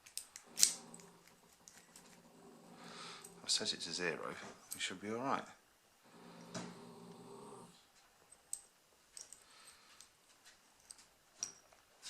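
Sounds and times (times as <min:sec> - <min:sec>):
small clicks of lock parts: 0:00.0 - 0:02.2, 0:08.3 - 0:10.1, 0:10.8 - 0:11.8.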